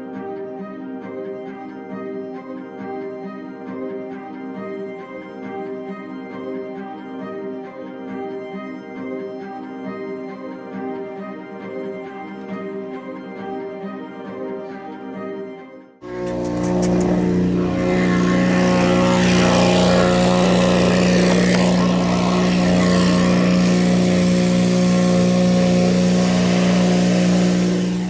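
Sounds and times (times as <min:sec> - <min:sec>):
equipment engine running steadily: 0:16.0 - 0:28.0.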